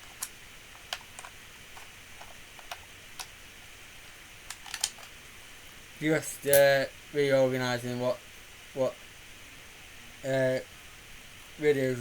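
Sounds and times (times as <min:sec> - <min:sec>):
faint room hiss: 0:00.0 - 0:12.0.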